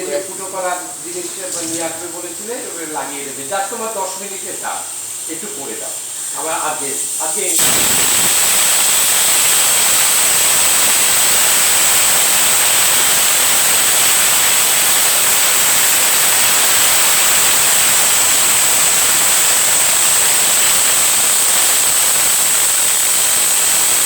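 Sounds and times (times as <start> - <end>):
pressure cooker whistle: 7.6 - 24.0.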